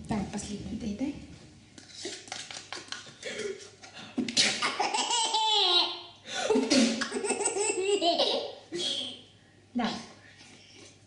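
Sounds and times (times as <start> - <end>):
baby laughing: 4.6 - 6.1, 6.9 - 8.6.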